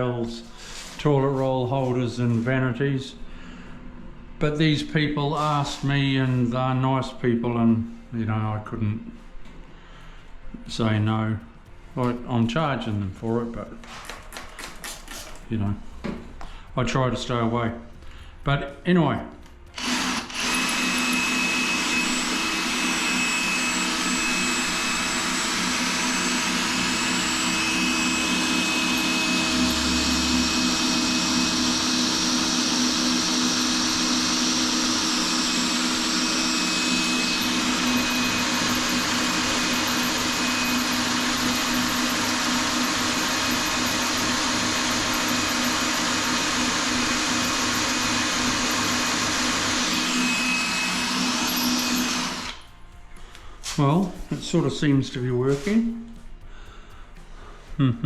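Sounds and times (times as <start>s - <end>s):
power drill whining through tile: 19.7s - 52.7s.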